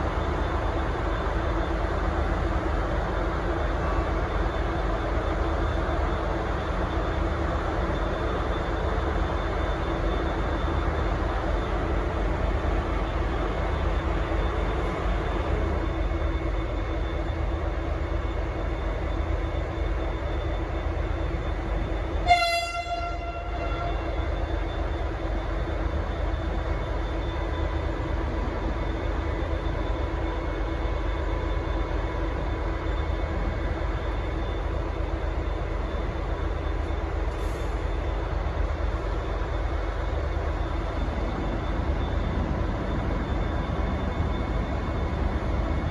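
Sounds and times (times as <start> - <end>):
diesel locomotive engine running: 0.0 - 45.9
train air horn blast: 22.2 - 24.2.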